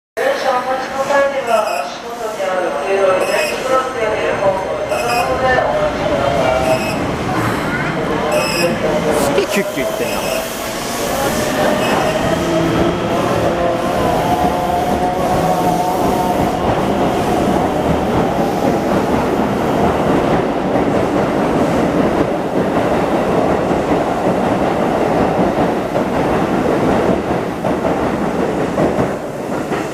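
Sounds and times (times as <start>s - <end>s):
train wheels rolling on rail: 0.6s - 29.9s
train clatter: 6.4s - 29.9s.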